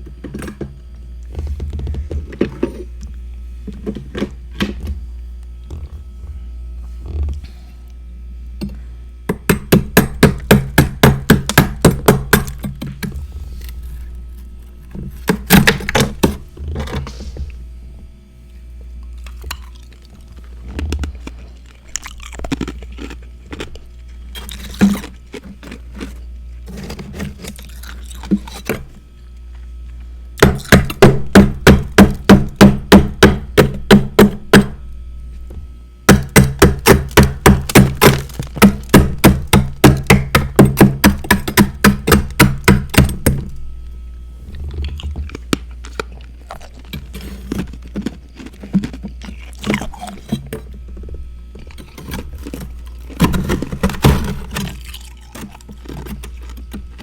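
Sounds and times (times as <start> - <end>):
steady low hum: 0.0 - 57.0
crunchy frost chewing: 13.2 - 15.3, 18.4 - 30.7, 36.8 - 39.8, 43.8 - 57.0.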